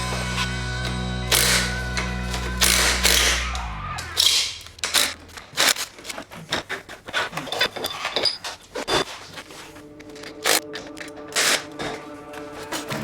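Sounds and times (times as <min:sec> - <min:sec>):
hand tools clinking on metal: 0:07.3 - 0:09.3.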